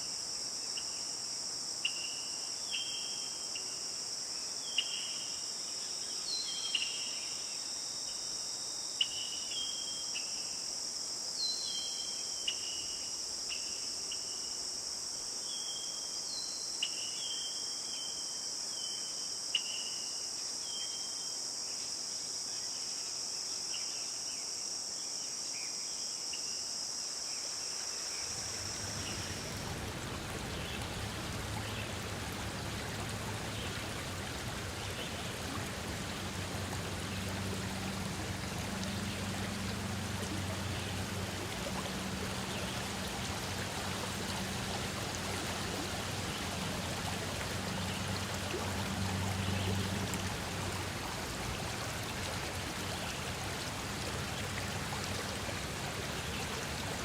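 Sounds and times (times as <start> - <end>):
crickets chirping: 0.0 - 57.0
stream rushing: 28.0 - 57.0.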